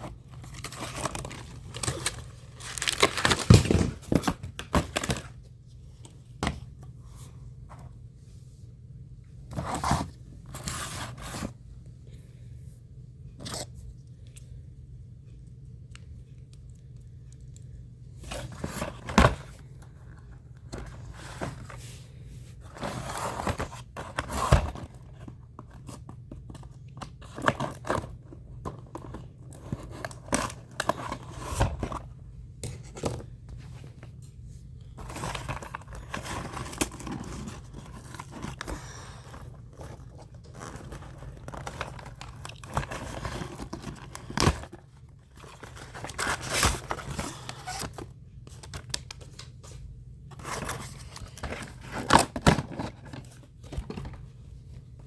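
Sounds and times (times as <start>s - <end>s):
packaging tearing and crinkling: 0.4s - 5.3s, 35.0s - 49.4s.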